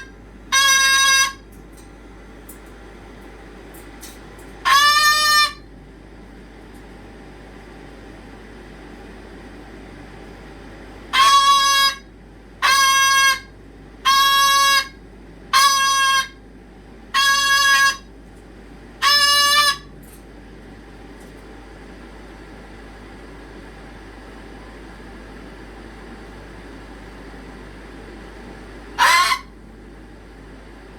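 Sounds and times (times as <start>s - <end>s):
pet animal calling loudly: 0.0s - 1.4s, 4.7s - 5.6s, 15.6s - 16.4s, 17.2s - 18.0s, 19.0s - 19.9s, 29.0s - 29.5s.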